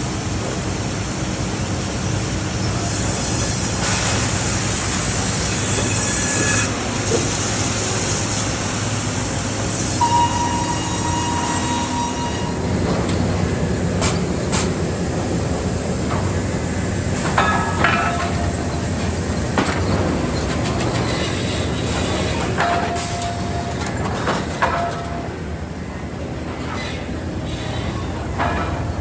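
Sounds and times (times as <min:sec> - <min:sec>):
sawmill machinery running: 0:00.0 - 0:29.0
metallic squeals and clanks: 0:05.4 - 0:07.3, 0:09.9 - 0:14.7, 0:26.5 - 0:29.0.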